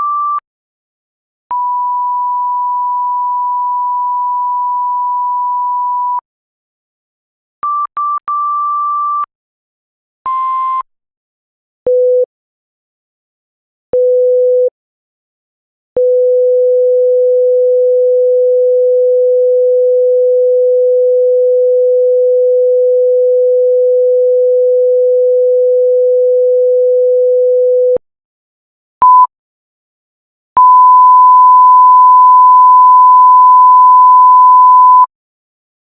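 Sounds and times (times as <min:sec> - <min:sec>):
censor bleeps: 0:30.6 - 0:35.1.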